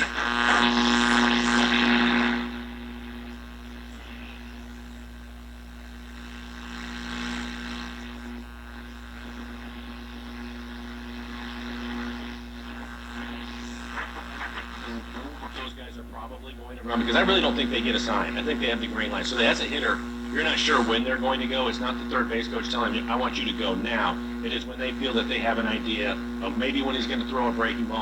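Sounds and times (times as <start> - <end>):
radio static hiss: 0.0 - 28.0.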